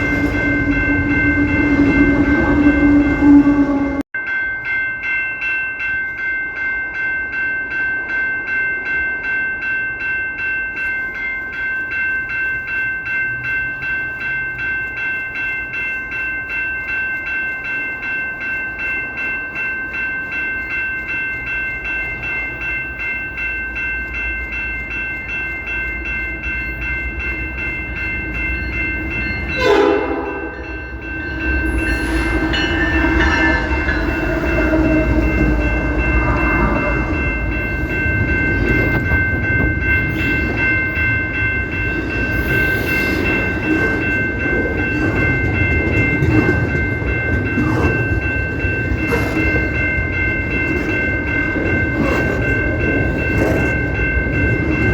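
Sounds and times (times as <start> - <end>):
locomotive air horn blast: 29.6 - 30.6.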